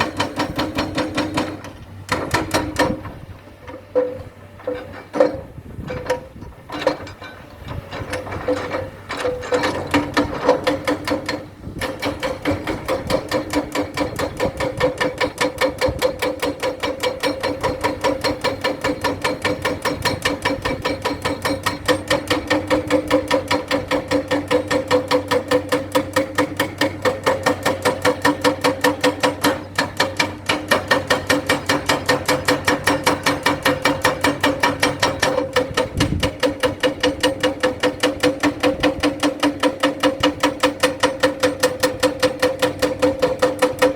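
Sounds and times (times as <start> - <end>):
steady machine hum: 0.0 - 43.9
machine knocking fast: 9.5 - 43.9.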